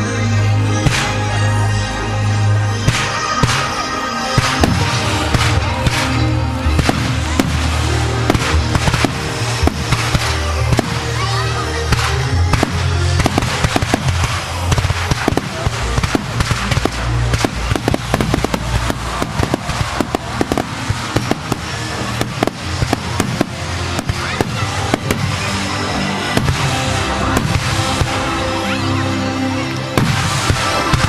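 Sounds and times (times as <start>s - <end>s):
music playing: 0.0s - 31.0s
fireworks bangs and crackling: 0.2s - 1.7s, 2.8s - 31.0s.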